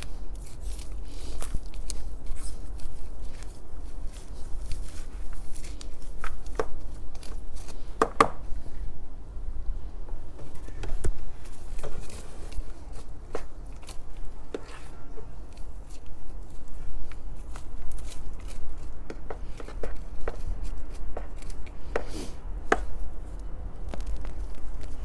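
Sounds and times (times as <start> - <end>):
hand shovel scraping soil: 0.0 - 6.4, 17.4 - 22.4
steady low rumble: 0.0 - 25.0.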